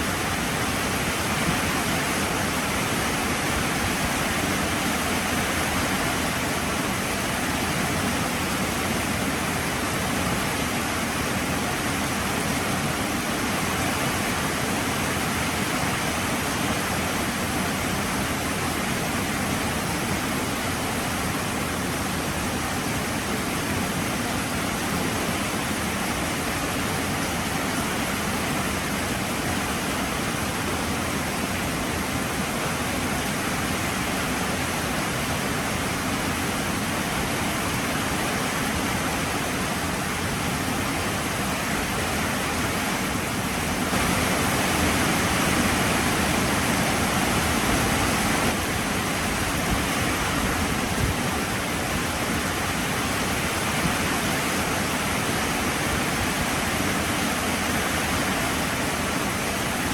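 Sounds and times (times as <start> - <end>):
heavy rain falling: 24.9 - 59.9.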